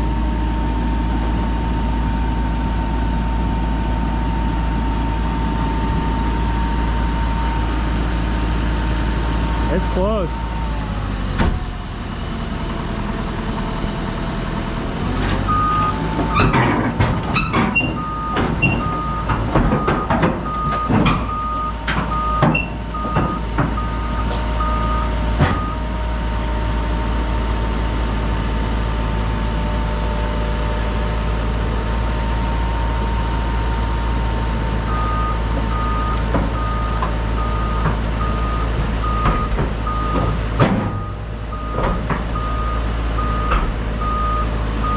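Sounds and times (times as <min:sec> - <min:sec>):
excavator diesel engine running: 0:00.0 - 0:44.9
travel alarm beeping: 0:34.9 - 0:40.3, 0:40.9 - 0:44.9.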